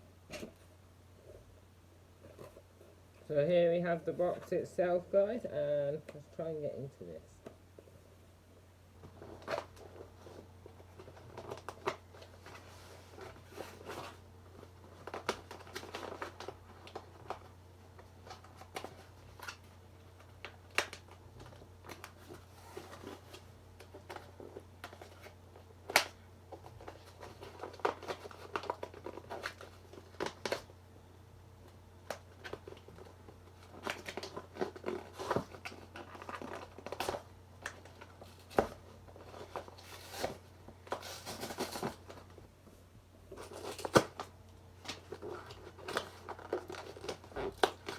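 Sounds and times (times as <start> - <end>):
cardboard parcel being opened: 9.1 - 30.7, 32.0 - 42.4, 43.3 - 47.9.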